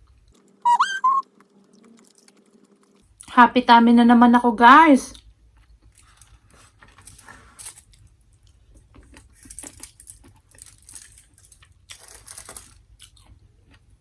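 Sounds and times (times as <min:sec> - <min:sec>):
wrapping crinkling and rustling: 0:05.8 - 0:13.3.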